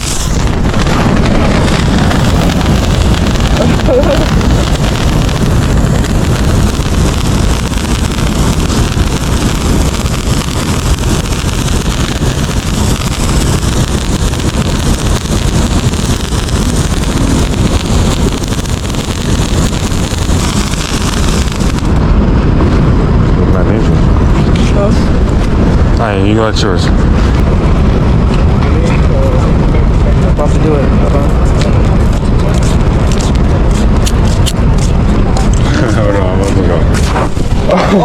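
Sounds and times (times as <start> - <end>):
wind buffeting microphone: 0.0 - 38.0.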